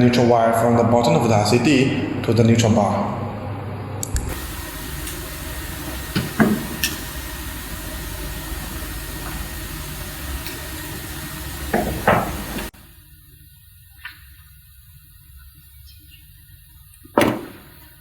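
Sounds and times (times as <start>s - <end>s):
steady hiss: 4.2s - 18.0s.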